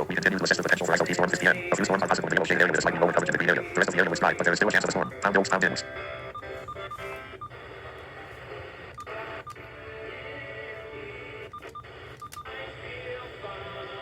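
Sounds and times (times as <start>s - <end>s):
thin radio audio: 0.0s - 5.9s.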